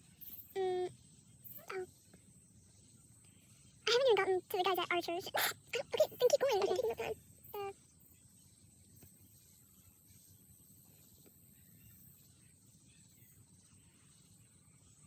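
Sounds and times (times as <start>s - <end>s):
high-pitched insect chirr: 0.0s - 10.3s.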